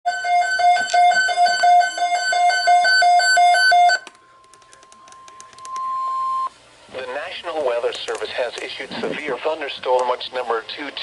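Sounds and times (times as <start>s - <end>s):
steady alarm tone: 0.1s - 4.1s, 5.0s - 6.6s
two-note electronic alarm: 0.1s - 4.1s, 5.6s - 6.5s.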